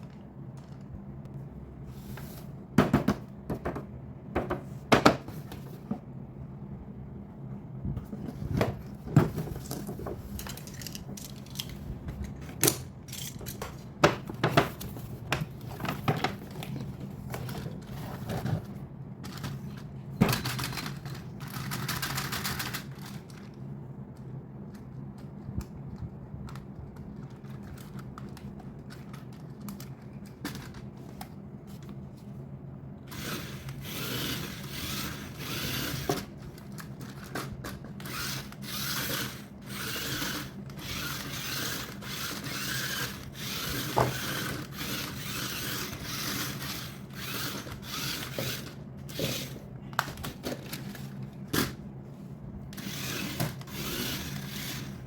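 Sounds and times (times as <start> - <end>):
steady low hum: 0.0 - 55.0
rustling and scraping: 7.9 - 21.8.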